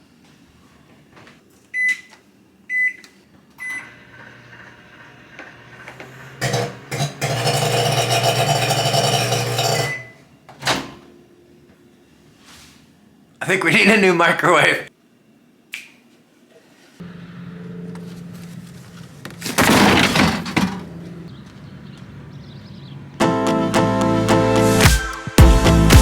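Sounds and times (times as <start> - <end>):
microwave keypad beeps: 1.7 - 2.1, 2.7 - 4.0
microwave humming: 1.7 - 12.1, 17.0 - 24.5
microwave click: 3.6 - 7.7
loud harsh buzz: 3.8 - 10.2, 17.0 - 21.3.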